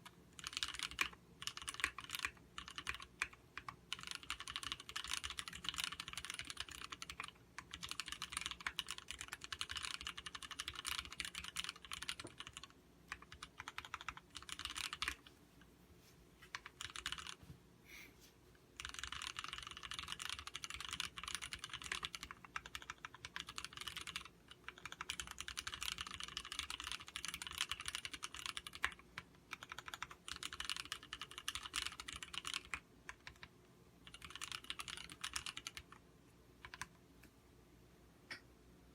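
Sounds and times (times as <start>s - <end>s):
mechanical keyboard typing: 0.0s - 15.3s, 16.5s - 17.4s, 18.8s - 36.0s, 36.6s - 37.0s.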